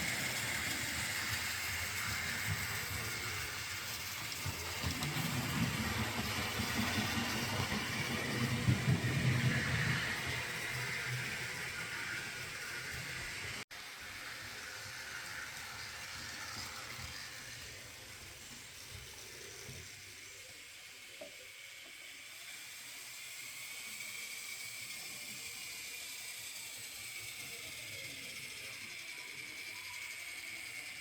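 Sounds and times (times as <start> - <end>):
model train whirring with high whine: 0.0 - 31.0.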